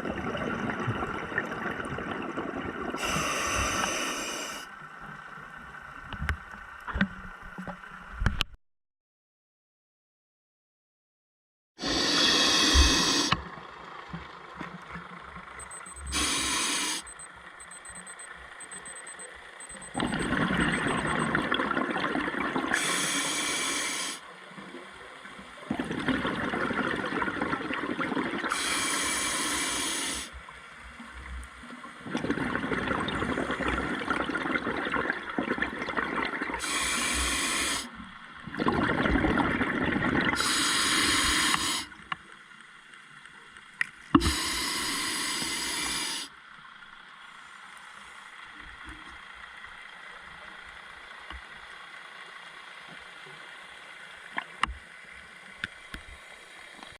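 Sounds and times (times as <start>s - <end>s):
diver breathing through regulator: 3.0s - 4.7s, 11.8s - 13.4s, 15.8s - 17.2s, 22.8s - 24.2s, 28.5s - 30.3s, 36.6s - 38.0s, 40.4s - 42.0s, 44.2s - 46.3s.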